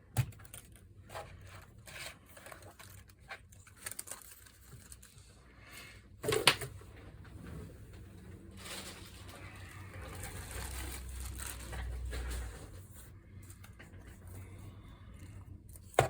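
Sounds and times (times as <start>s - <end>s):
clicks scrapes and rustles: 0.3s - 5.3s.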